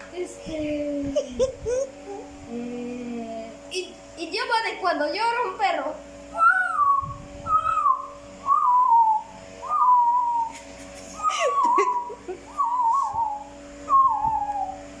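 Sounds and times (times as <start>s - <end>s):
person whistling parrot calls: 6.3s - 14.8s.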